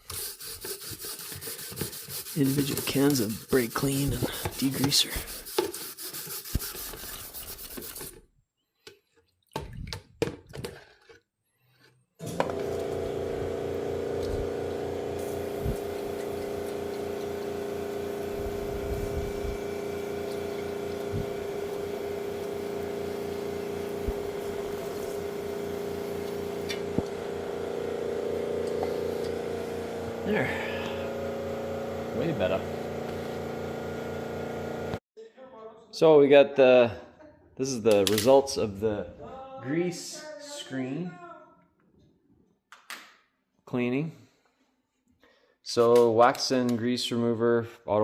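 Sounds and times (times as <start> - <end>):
rubbing and scrubbing: 0.0 - 8.2, 15.2 - 27.4
electric fan motor humming: 12.2 - 35.0.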